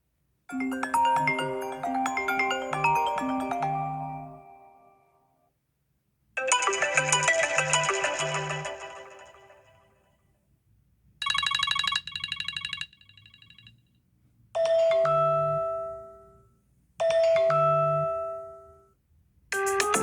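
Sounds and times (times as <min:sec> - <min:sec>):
busy ringtone: 0:00.5 - 0:05.0, 0:06.4 - 0:09.9, 0:11.2 - 0:13.8, 0:14.6 - 0:18.8
pulsing melodic ringtone: 0:00.5 - 0:05.0, 0:06.4 - 0:09.8, 0:11.2 - 0:13.8, 0:14.6 - 0:16.4, 0:17.0 - 0:18.8.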